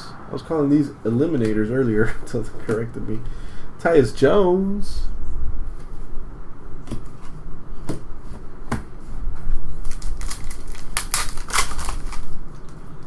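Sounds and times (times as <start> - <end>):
trading cards clicking: 9.9 - 12.8.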